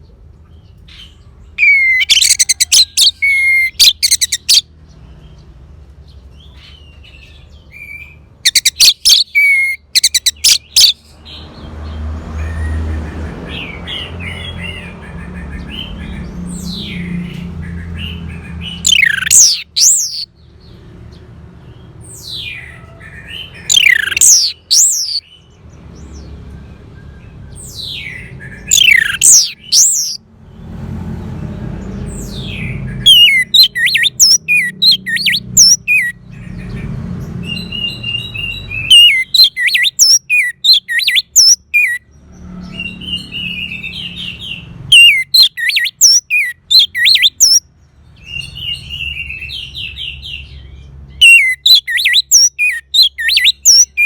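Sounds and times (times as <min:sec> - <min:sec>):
thrush singing: 0:01.6 - 0:04.7, 0:18.8 - 0:20.2, 0:23.6 - 0:25.2, 0:28.7 - 0:30.2, 0:32.5 - 0:36.2, 0:38.8 - 0:42.0, 0:44.9 - 0:47.6, 0:51.2 - 0:54.0.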